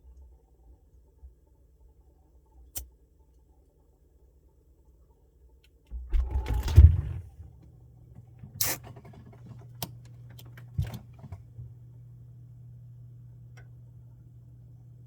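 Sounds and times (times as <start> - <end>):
refrigerator hum: 5.8 - 15.0
refrigerator rumbling and knocking: 5.9 - 7.7, 10.6 - 11.7.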